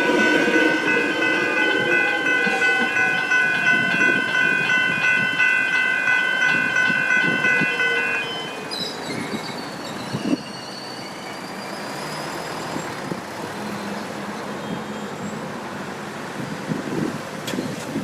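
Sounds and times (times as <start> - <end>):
passing vehicles rumble and hiss: 11.8 - 18.0.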